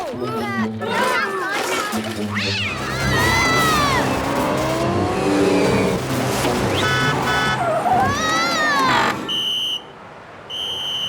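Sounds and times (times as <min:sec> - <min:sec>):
cartoon engine running: 0:01.9 - 0:09.2.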